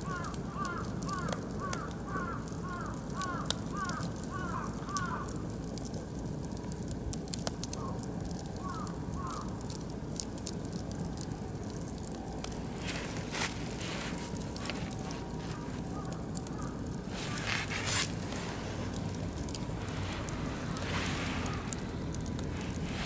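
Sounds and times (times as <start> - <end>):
wood fire crackling and popping: 0.0 - 23.0
bird calling: 12.6 - 23.0.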